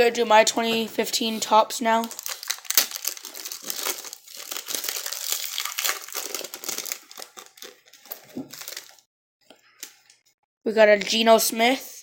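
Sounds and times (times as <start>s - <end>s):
foil wrapper crinkling and tearing: 2.0s - 9.1s.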